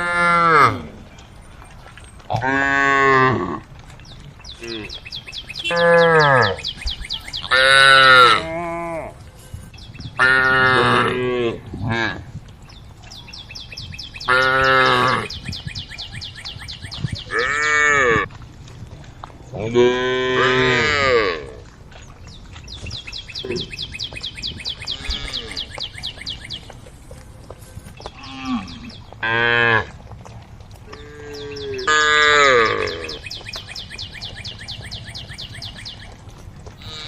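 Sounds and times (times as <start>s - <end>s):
cattle mooing: 0.0s - 1.0s, 5.6s - 6.7s, 7.4s - 9.2s, 10.2s - 12.2s, 17.3s - 18.3s, 19.7s - 21.6s, 24.8s - 25.8s, 30.9s - 33.3s.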